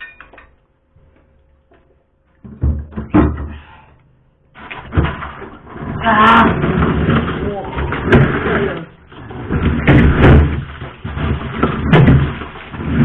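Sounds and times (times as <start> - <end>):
ice clattering: 4.6 - 13.0.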